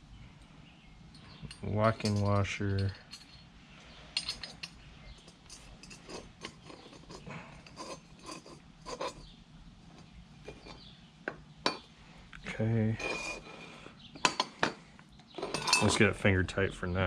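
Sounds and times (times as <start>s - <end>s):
metal hardware clinking: 1.1s - 3.5s, 4.1s - 9.3s, 11.6s - 11.9s, 14.2s - 16.1s.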